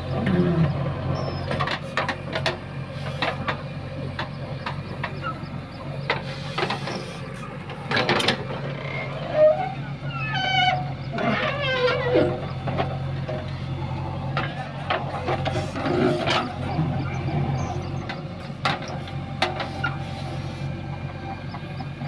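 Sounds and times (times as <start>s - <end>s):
diesel engine running: 0.0s - 22.0s
wavering pitched calls: 16.2s - 18.4s.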